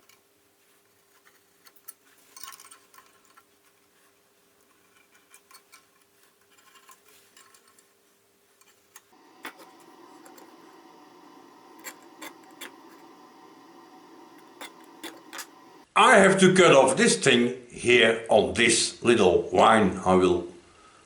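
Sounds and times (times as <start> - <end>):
steady low hum: 9.1 - 15.9.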